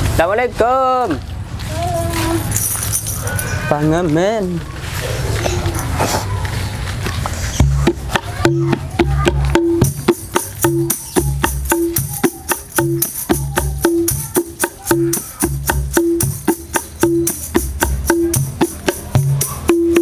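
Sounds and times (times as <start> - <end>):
percussion beat: 1.7 - 3.6, 7.2 - 20.0
tambourine jingles: 2.2 - 3.6, 9.8 - 20.0
deep bass notes: 7.5 - 20.0.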